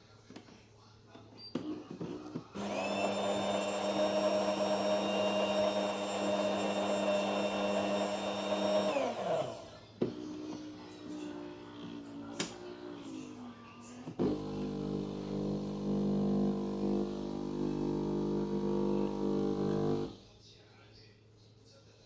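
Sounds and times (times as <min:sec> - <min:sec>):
small electric motor whining: 0:02.6 - 0:09.8, 0:14.2 - 0:20.2.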